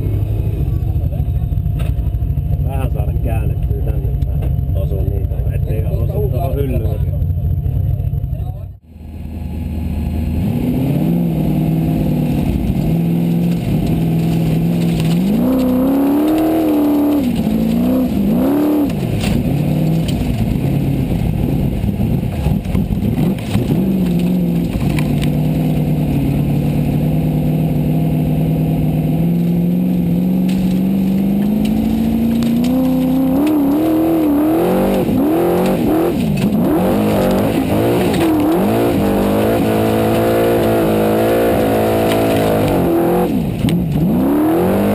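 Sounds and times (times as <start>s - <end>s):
race car engine revving: 10.2s - 44.9s.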